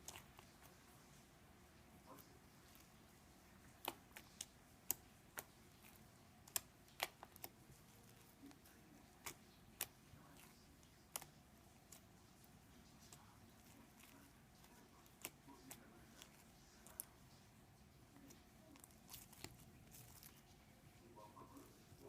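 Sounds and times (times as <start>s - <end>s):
slime kneaded with clicks and pops: 3.6s - 17.2s, 18.0s - 20.5s.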